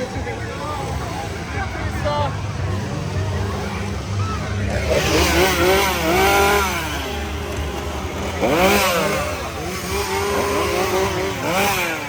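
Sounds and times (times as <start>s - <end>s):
chainsaws revving: 2.7s - 12.0s.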